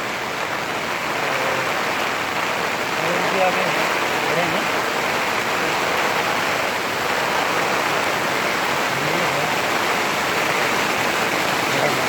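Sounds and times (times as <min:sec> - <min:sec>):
rain falling: 0:00.0 - 0:12.0
waterfall roaring: 0:00.0 - 0:12.0.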